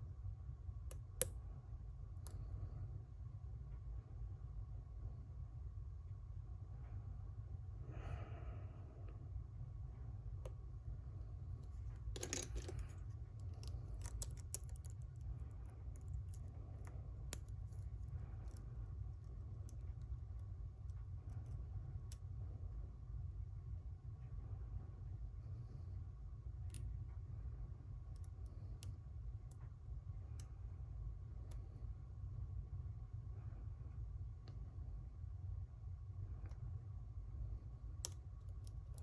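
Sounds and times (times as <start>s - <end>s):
steady low hum: 0.0s - 39.0s
pick scraping in a lock: 11.6s - 18.6s
lock pick clicking in a lock: 12.2s - 16.4s.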